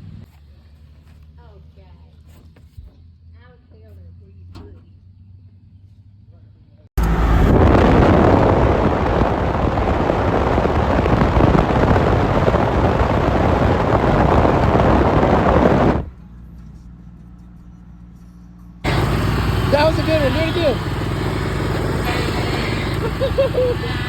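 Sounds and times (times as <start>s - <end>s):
lawnmower engine running: 18.8s - 24.0s.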